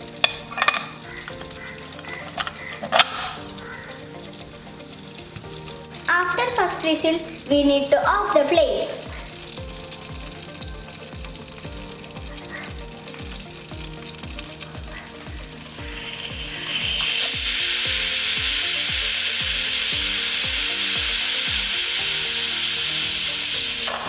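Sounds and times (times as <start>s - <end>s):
steam hissing: 0.0s - 8.0s, 8.8s - 24.0s
pressure cooker whistle: 15.8s - 24.0s.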